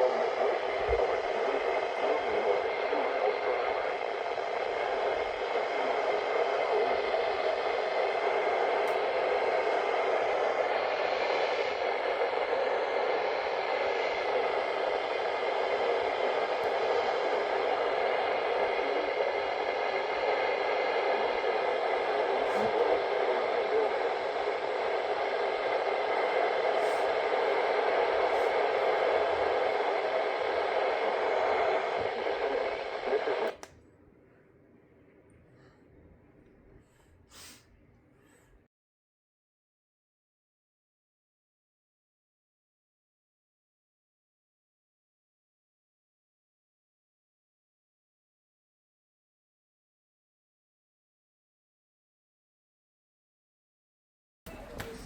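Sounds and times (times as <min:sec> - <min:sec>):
radio static hiss: 0:00.0 - 0:33.6.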